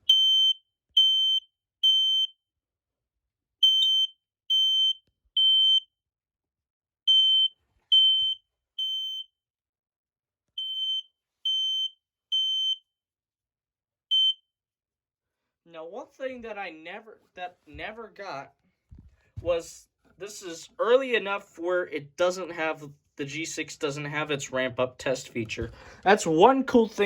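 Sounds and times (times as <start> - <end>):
smoke alarm beeping: 0.0 - 2.4, 3.6 - 5.9, 7.1 - 9.3, 10.6 - 12.9, 14.1 - 14.4.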